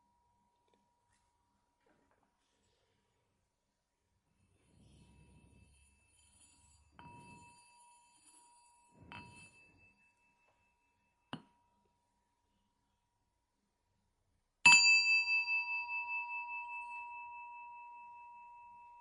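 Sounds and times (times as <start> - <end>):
small bell ringing: 4.6 - 11.9, 14.7 - 19.0.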